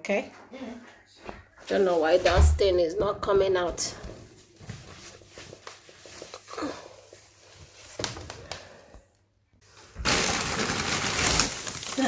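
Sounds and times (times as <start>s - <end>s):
scrubbing and rubbing: 1.6s - 8.0s.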